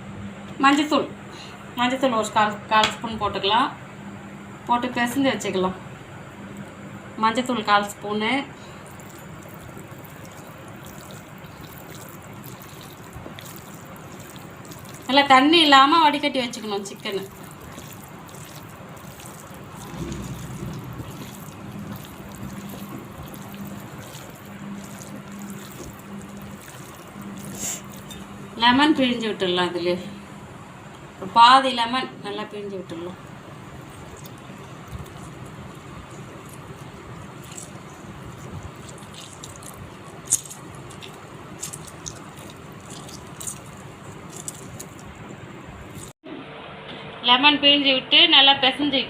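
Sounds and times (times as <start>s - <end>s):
faint steady hum: 0.0s - 49.0s
hands squishing wet chicken: 8.7s - 28.6s, 33.2s - 46.2s
water trickling and dripping: 8.7s - 28.6s, 33.2s - 45.2s.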